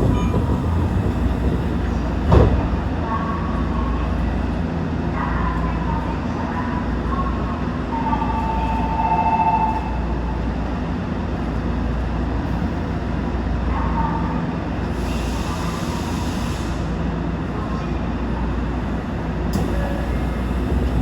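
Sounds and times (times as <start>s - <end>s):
low hum of train equipment: 0.0s - 21.0s.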